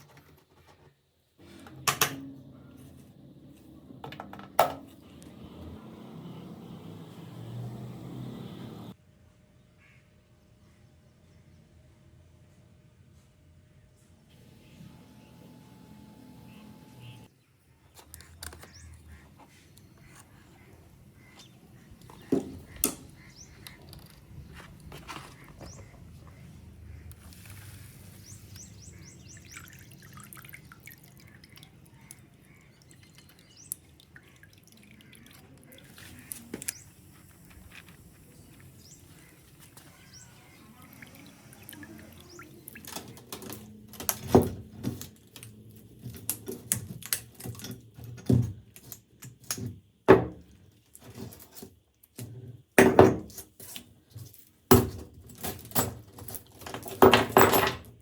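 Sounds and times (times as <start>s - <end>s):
metal parts knocking and clinking: 42.8s - 49.7s, 51.0s - 58.0s.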